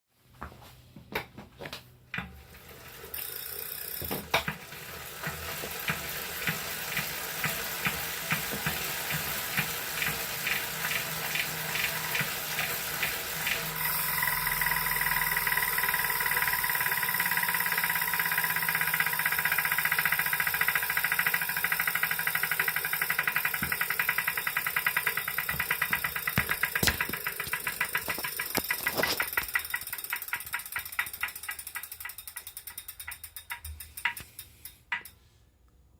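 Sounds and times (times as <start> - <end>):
rhythmic knocking of bike trainer: 2.1 - 35.2
trainer running whine: 5.9 - 30.3.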